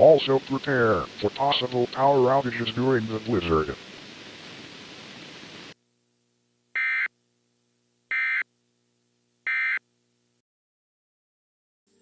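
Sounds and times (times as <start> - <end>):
static hiss: 0.0 - 10.4
short digital data bursts: 6.8 - 7.1.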